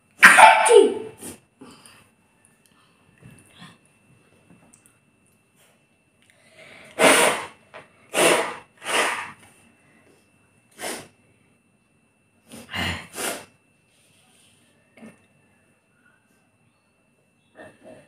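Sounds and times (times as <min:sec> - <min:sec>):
person sneezing: 0:00.2 - 0:01.4, 0:06.9 - 0:09.4, 0:10.8 - 0:11.1, 0:12.5 - 0:13.5.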